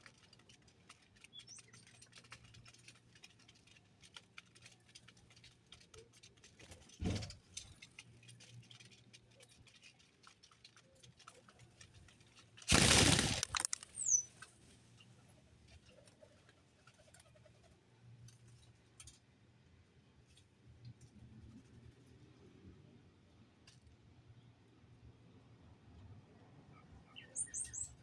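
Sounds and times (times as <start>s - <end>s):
birds tapping and pecking: 0.0s - 14.4s
loud rustle: 12.7s - 14.2s
bird chirp: 13.5s - 14.4s, 27.1s - 28.0s.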